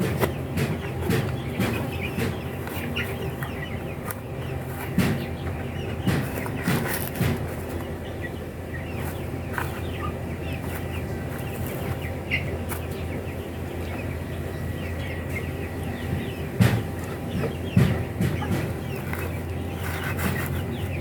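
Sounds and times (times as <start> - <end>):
sharp knocks: 0.0 - 3.0, 4.8 - 7.6, 16.0 - 19.4
chickens clucking and cheeping: 0.0 - 21.0.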